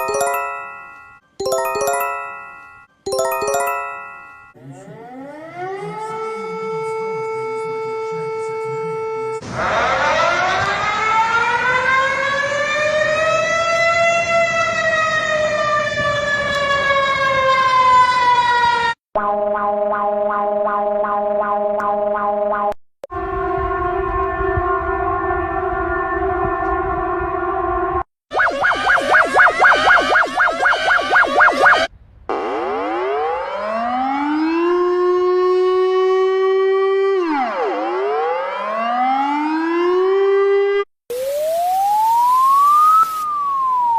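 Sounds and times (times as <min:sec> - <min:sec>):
warbling alarm tone: 0:00.0 - 0:08.0, 0:19.2 - 0:22.7, 0:28.3 - 0:36.3, 0:37.1 - 0:40.2, 0:41.2 - 0:43.9
warning siren wailing: 0:00.0 - 0:20.2, 0:23.1 - 0:43.9.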